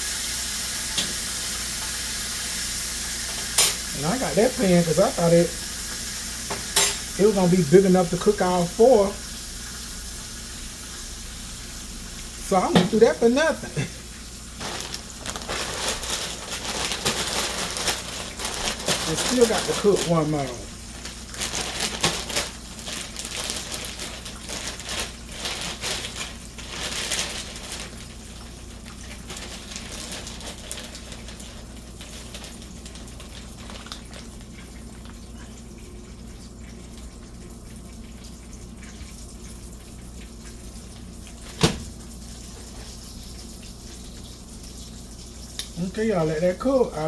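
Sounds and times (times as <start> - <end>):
meat sizzling in a pan: 0.0 - 35.4.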